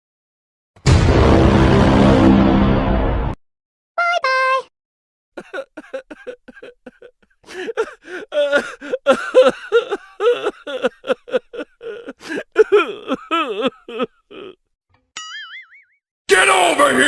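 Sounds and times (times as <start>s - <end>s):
high-pitched voice sounds: 4.0s - 4.7s.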